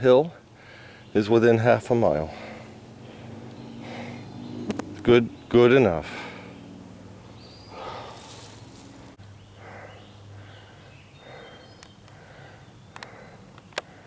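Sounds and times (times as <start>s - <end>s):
heavy breathing: 0.6s - 1.1s, 2.2s - 4.7s, 6.0s - 6.7s, 7.6s - 14.0s.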